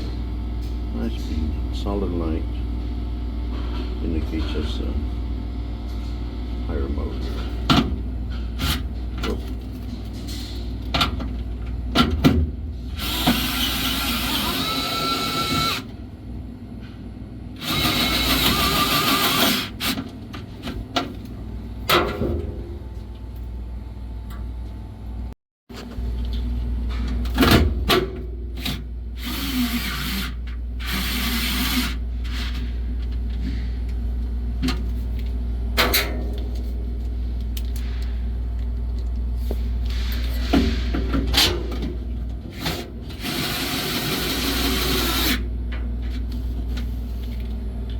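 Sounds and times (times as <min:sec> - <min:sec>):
steady low hum: 0:00.0 - 0:47.9
electric screwdriver driving screws: 0:13.0 - 0:15.9, 0:17.6 - 0:20.0.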